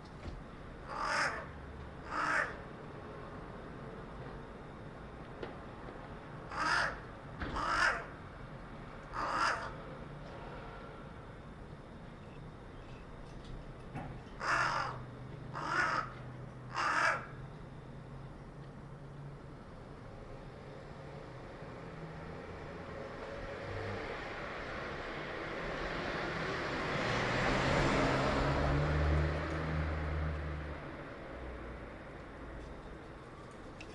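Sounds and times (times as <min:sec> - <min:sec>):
crow cawing: 0:00.8 - 0:02.6, 0:06.5 - 0:08.2, 0:09.1 - 0:09.8, 0:14.4 - 0:17.4
car driving past: 0:22.0 - 0:31.6.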